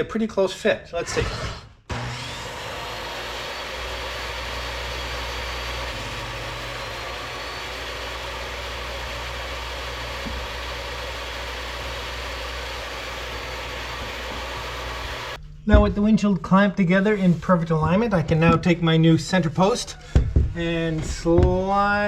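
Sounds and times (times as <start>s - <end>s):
table saw cutting wood: 1.0s - 15.4s.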